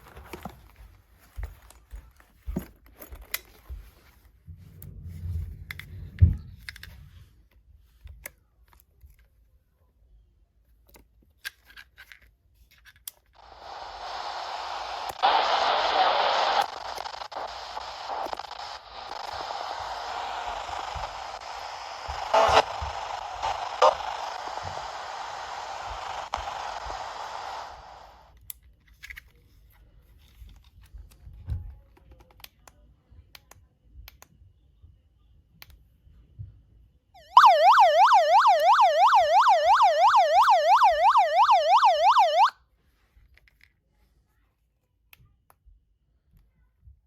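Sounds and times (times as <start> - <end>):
radio static hiss: 13.4 - 28.3
warbling electronic siren: 13.4 - 28.3, 37.2 - 42.5.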